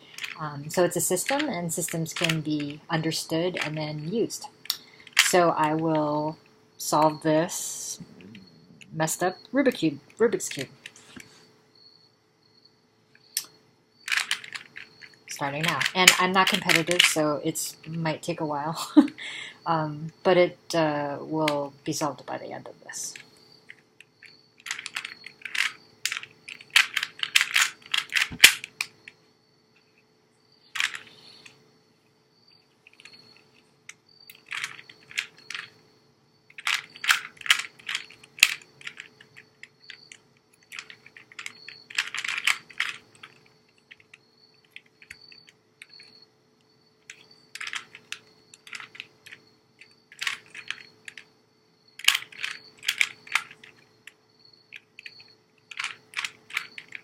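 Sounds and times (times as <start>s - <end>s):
puzzle cube clicking turns: 0.1s - 0.4s, 4.6s - 5.3s, 14.1s - 17.2s, 23.2s - 29.2s, 30.8s - 31.6s, 32.8s - 35.8s, 36.5s - 46.1s, 47.0s - 51.3s, 52.0s - 57.0s.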